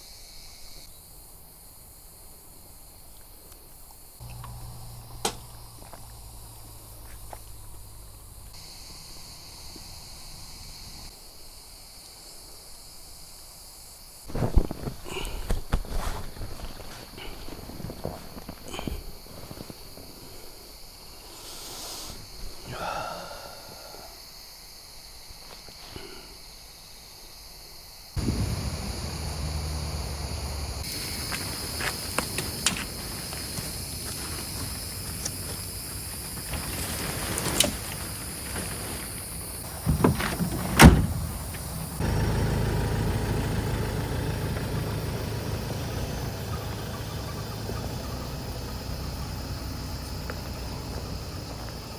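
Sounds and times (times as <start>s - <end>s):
insects trilling: 0.0s - 51.9s
car engine humming: 4.2s - 8.6s, 28.2s - 51.9s
car door thump: 39.7s - 42.0s.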